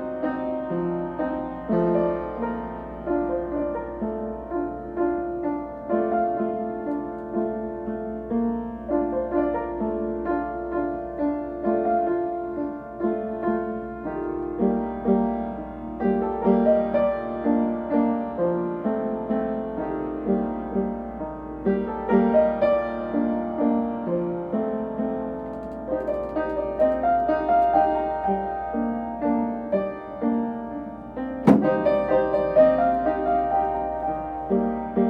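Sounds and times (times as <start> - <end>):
solo piano piece: 0.0 - 35.0.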